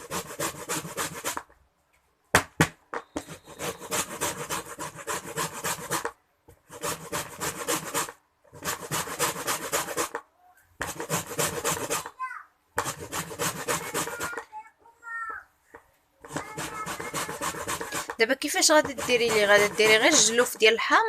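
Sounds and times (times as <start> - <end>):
grater scraping lemon peel: 0.0 - 1.4, 3.2 - 6.1, 6.7 - 10.2, 10.8 - 12.2, 12.8 - 14.5, 16.2 - 20.8
sharp knocks: 2.3 - 3.4.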